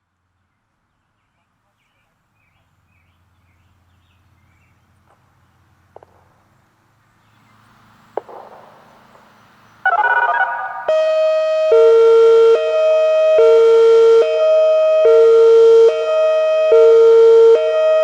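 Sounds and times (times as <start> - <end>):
electronic warning siren: 9.8 - 18.0.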